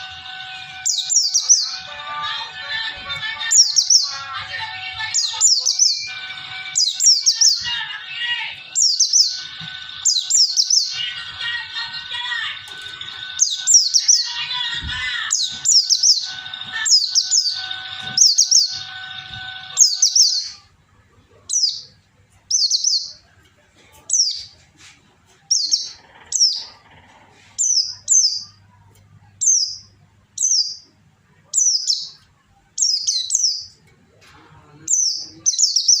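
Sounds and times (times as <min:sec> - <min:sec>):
bird chirping: 0:00.0 - 0:20.7, 0:21.3 - 0:23.3, 0:24.1 - 0:24.6, 0:25.5 - 0:28.6, 0:29.4 - 0:33.8, 0:34.7 - 0:36.0
steady background tones: 0:00.0 - 0:20.7.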